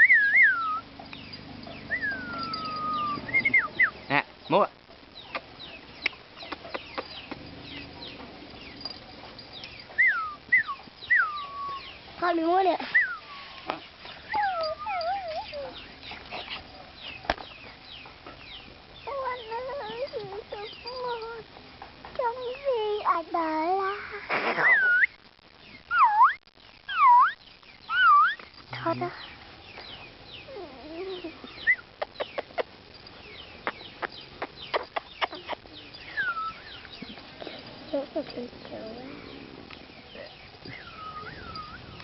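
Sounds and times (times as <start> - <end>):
puppy whining: 0.0 - 4.1, 6.4 - 12.0, 12.8 - 17.2, 19.0 - 21.5, 24.0 - 25.2, 25.9 - 29.0, 30.4 - 33.1, 34.4 - 42.0
birds peeping: 0.0 - 23.2, 23.8 - 42.0
young animal high calls: 1.8 - 4.0, 10.0 - 12.0, 12.8 - 16.6, 25.9 - 28.4.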